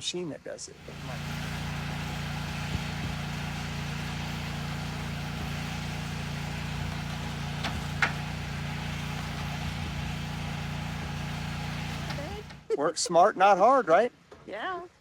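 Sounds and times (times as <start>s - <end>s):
engine idling: 0.7s - 12.7s.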